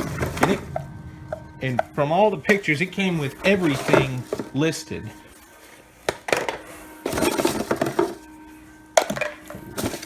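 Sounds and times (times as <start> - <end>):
packing peanuts rustling: 6.6 - 10.0.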